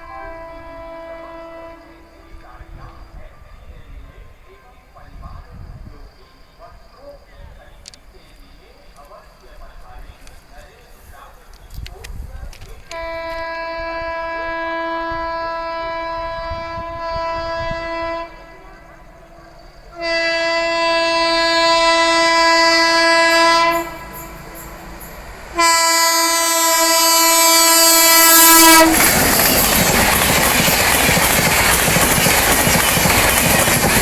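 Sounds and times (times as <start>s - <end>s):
locomotive horn blasts: 0.0s - 3.2s, 12.9s - 19.2s, 20.0s - 24.8s, 25.6s - 29.3s
train wheels rushing on track: 16.2s - 34.0s.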